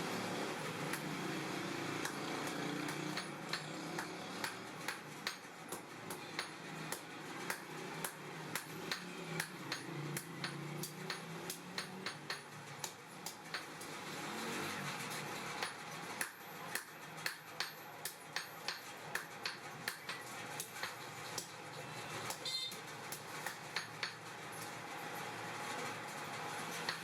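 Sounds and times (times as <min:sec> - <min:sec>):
hammer striking steel: 0:00.9 - 0:01.2, 0:02.0 - 0:14.0, 0:15.5 - 0:21.6, 0:22.3 - 0:24.3, 0:26.8 - 0:27.0.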